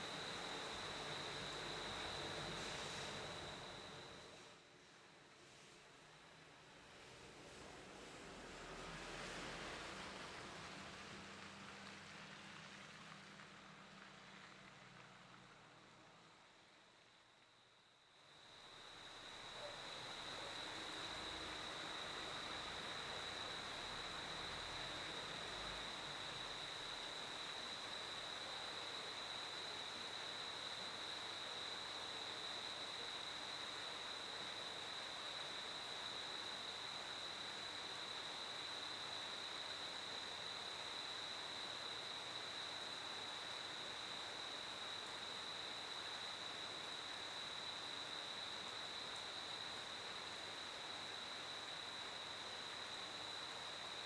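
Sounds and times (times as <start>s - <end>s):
cricket chirping: 0.0s - 4.4s, 17.1s - 54.0s
faint background hiss: 0.0s - 54.0s.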